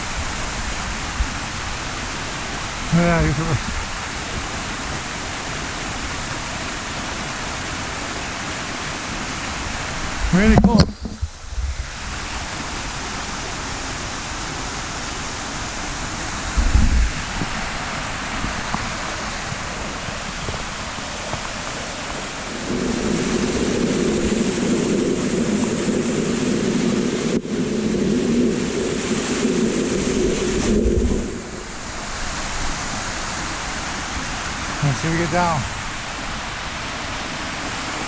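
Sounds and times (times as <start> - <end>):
rushing water: 0.0 - 38.0
low thump: 10.5 - 11.4.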